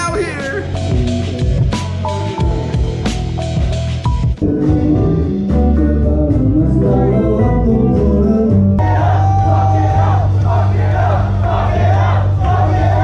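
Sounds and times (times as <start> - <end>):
melodic music over bass: 0.0 - 13.0
person singing: 4.4 - 10.1.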